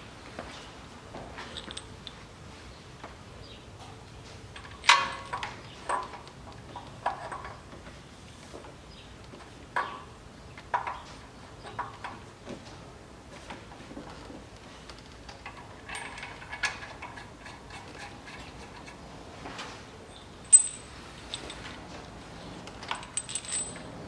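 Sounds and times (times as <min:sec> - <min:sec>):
metallic clinks of steel tools: 0:20.5 - 0:21.6.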